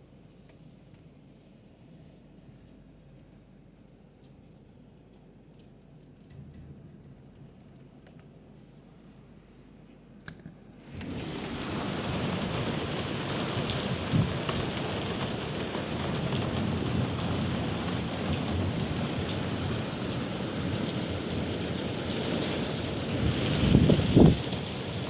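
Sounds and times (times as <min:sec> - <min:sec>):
heavy rain pouring: 0:10.8 - 0:25.0.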